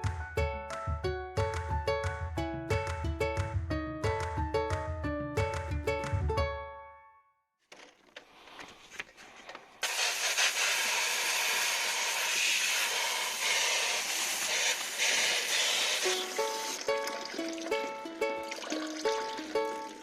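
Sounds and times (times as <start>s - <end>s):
hissing spray: 9.8s - 16.8s.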